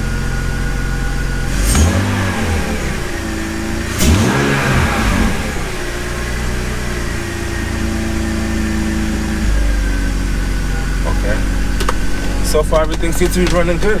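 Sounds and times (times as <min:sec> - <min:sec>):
car engine idling and revving: 0:00.0 - 0:14.0.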